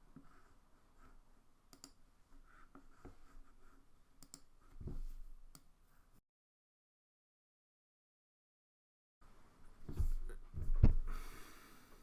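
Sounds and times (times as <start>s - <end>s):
computer mouse clicking: 1.7s - 2.0s, 4.2s - 4.5s.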